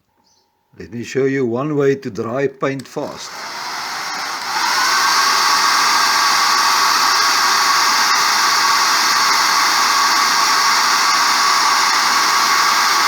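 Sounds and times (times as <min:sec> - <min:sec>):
hot-air blower running: 0:03.0 - 0:13.0.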